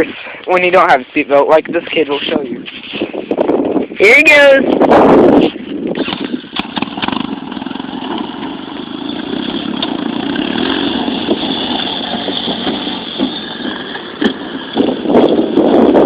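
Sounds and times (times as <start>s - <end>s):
small vehicle motor running: 6.1s - 16.0s.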